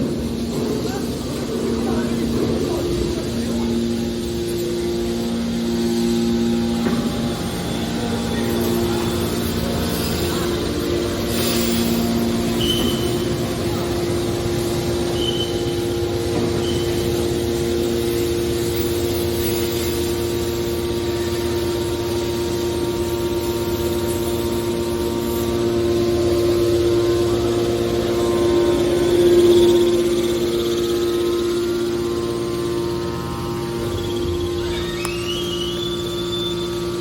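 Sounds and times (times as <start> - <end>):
hydraulic power unit humming: 0.0 - 37.0
high chirps: 33.8 - 36.9.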